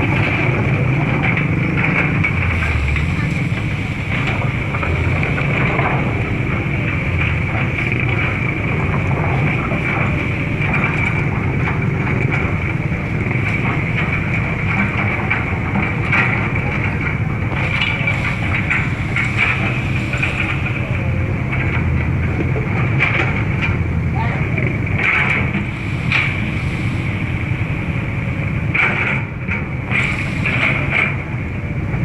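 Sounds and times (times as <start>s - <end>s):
engine humming: 0.0s - 32.0s.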